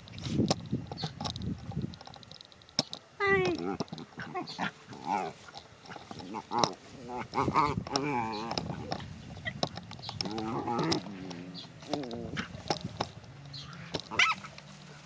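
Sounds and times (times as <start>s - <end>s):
animal grunting: 3.2s - 9.6s, 10.2s - 14.6s
animal wavering calls: 3.2s - 14.8s.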